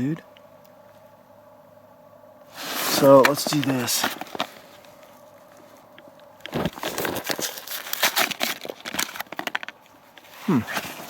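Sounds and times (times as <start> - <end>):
tool kit rustling and clicking: 2.9 - 5.0, 6.4 - 11.0.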